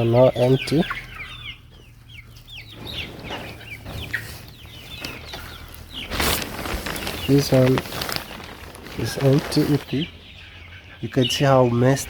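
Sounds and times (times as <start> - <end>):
chickens cheeping and clucking: 0.0 - 12.0.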